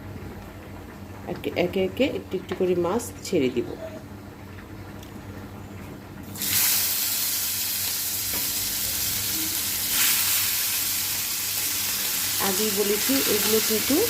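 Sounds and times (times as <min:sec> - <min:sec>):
fish sizzling in hot oil: 0:06.4 - 0:14.0.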